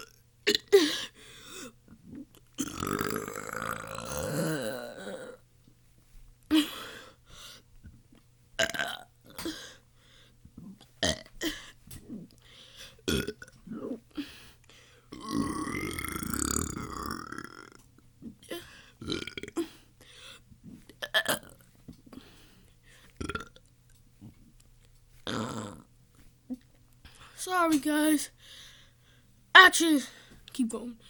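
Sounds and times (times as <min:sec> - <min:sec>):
person burping: 0:00.0 - 0:05.4, 0:08.6 - 0:09.6, 0:10.6 - 0:12.3, 0:13.1 - 0:14.0, 0:15.1 - 0:19.8, 0:21.0 - 0:21.6, 0:23.2 - 0:23.6, 0:25.3 - 0:25.9.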